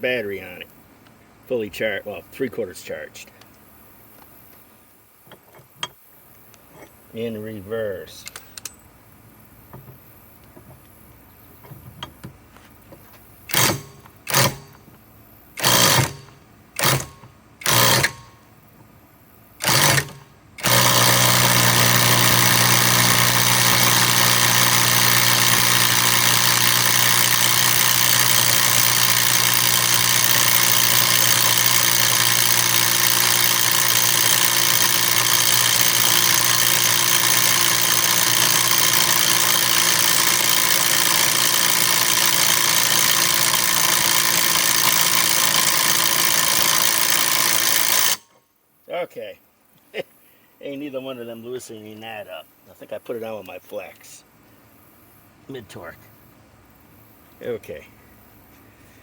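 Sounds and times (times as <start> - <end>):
impact wrench hammering: 13.5 - 14.9, 15.6 - 18.3, 19.6 - 48.2.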